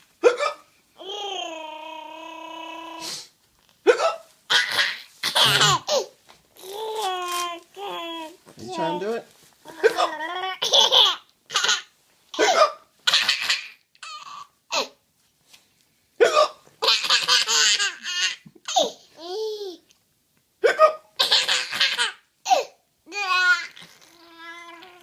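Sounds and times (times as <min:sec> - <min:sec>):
baby hiccups: 0:00.2 - 0:00.7, 0:03.9 - 0:06.1
baby laughing: 0:03.9 - 0:07.3, 0:09.7 - 0:14.9, 0:16.8 - 0:19.6, 0:20.8 - 0:25.0.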